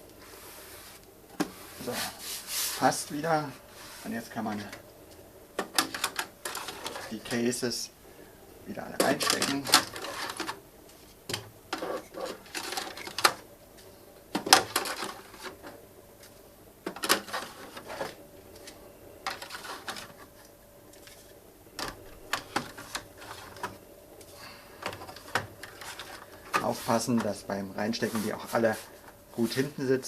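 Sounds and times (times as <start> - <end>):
plastic trays sliding and rattling: 5.6 - 7.5, 9.0 - 13.4, 14.4 - 20.4, 21.0 - 23.8, 24.8 - 29.8.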